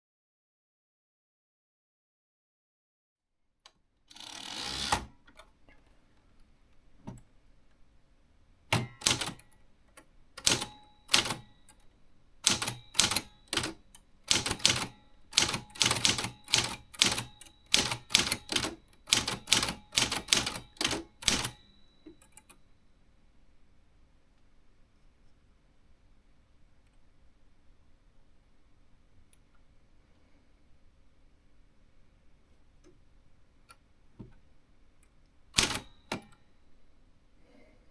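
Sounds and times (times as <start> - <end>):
typewriter keystrokes: 8.7 - 9.5, 10.4 - 11.6, 12.4 - 21.6, 35.6 - 36.4.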